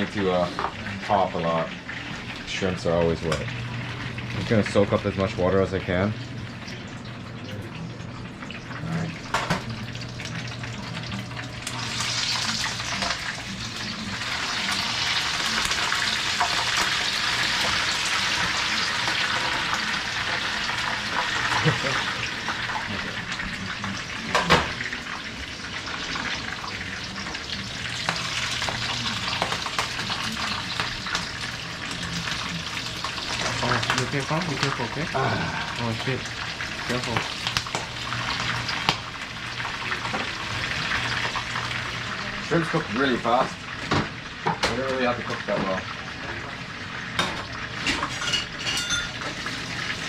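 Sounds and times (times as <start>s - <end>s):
shrimp sizzling in hot oil: 8.5s - 50.0s.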